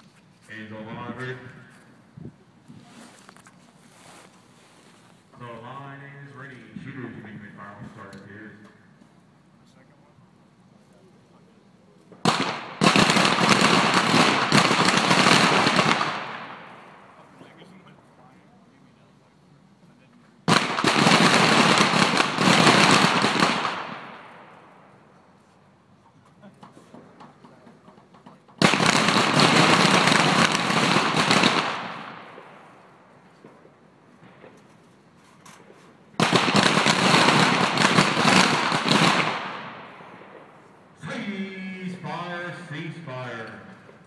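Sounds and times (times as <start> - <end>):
pistols firing: 12.1 - 17.2, 20.4 - 25.0, 26.9 - 34.8, 35.6 - 44.0.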